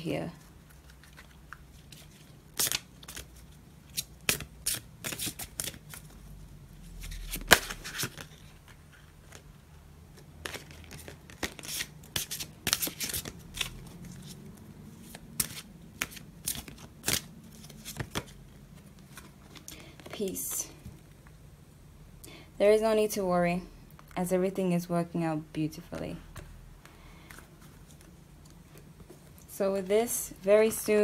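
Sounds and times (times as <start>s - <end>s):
cards being shuffled: 0.4s - 6.2s, 6.9s - 20.5s.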